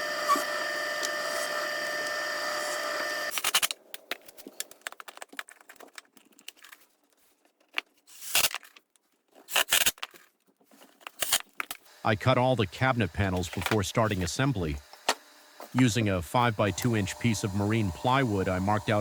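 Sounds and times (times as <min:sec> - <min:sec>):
cordless drill whining: 0:00.0 - 0:03.4, 0:14.8 - 0:19.0.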